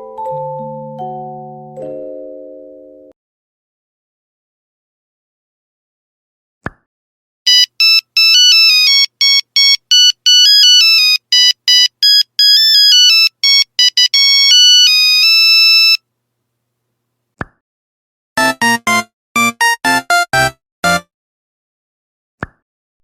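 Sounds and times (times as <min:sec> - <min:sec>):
electronic beeping ringtone melody: 0:07.5 - 0:16.0, 0:18.4 - 0:21.1.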